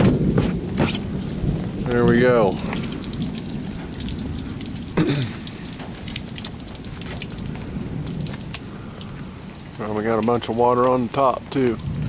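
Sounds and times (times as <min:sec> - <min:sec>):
rain dripping onto surfaces: 0:00.0 - 0:12.0.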